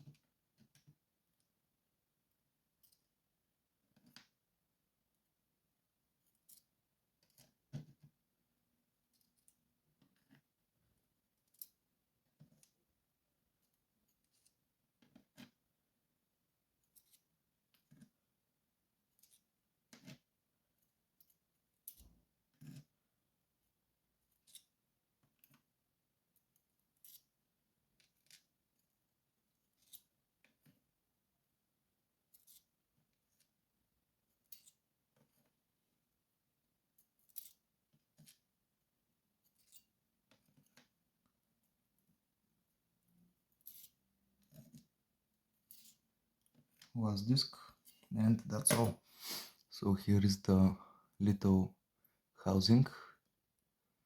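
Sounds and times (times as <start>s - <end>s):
small metal clicks and clinks: 2.8s - 3.1s, 34.5s - 34.8s, 43.6s - 44.8s, 45.7s - 46.0s.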